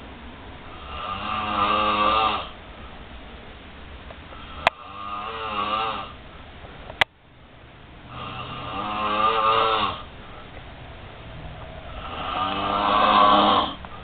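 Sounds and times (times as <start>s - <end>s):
person snoring: 0.7s - 2.5s, 4.4s - 6.1s, 8.1s - 10.1s, 11.9s - 13.8s.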